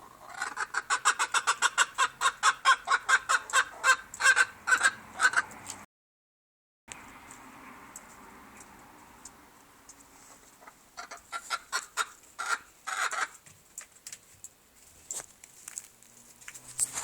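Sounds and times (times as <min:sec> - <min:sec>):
chicken clucking: 0:00.0 - 0:05.7, 0:10.3 - 0:13.4.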